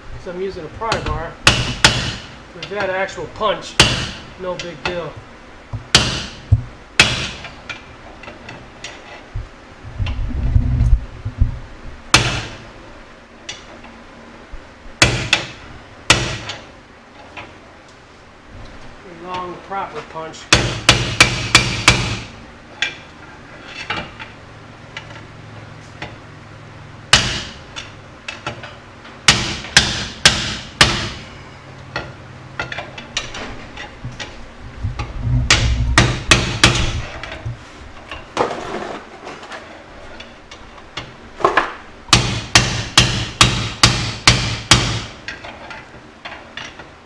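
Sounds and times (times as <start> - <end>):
hammer striking steel bar: 0.9 - 2.3, 3.8 - 4.2, 5.9 - 6.4, 7.0 - 7.5, 12.2 - 12.6, 15.0 - 16.6, 20.5 - 22.3, 27.1 - 27.6, 29.3 - 31.4, 35.5 - 37.0, 42.1 - 45.3.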